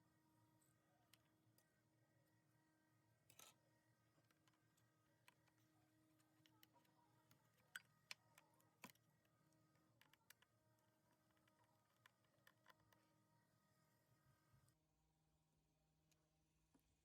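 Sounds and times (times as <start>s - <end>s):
faint clicks and ticks: 3.3s - 13.2s.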